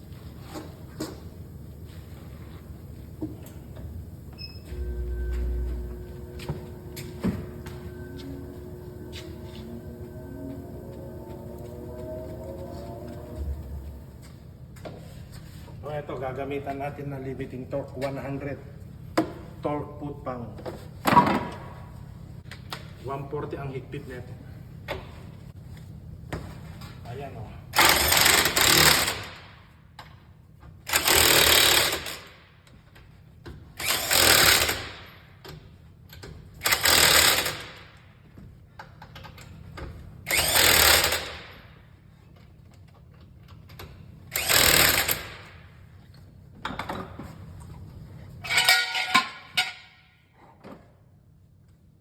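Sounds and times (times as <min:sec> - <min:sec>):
pneumatic impact wrench bursts: 0:27.8 - 0:29.5, 0:30.9 - 0:32.4, 0:33.8 - 0:35.1, 0:36.6 - 0:37.9, 0:40.3 - 0:41.6, 0:44.3 - 0:45.6.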